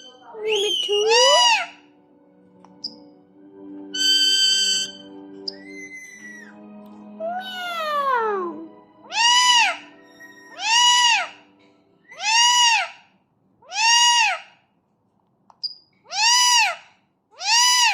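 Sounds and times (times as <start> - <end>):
parakeet imitating a cat's meow: 0.0 - 1.7, 4.0 - 6.5, 7.3 - 9.9, 10.5 - 11.3, 12.1 - 13.0, 13.6 - 14.4, 16.1 - 16.8, 17.4 - 17.9.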